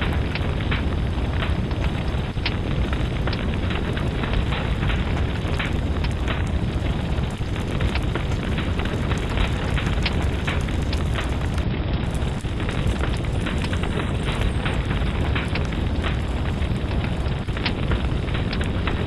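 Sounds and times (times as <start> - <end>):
fire crackling: 0.0 - 19.0
low rumble: 0.0 - 19.0
sharp snaps and pops: 0.0 - 19.0.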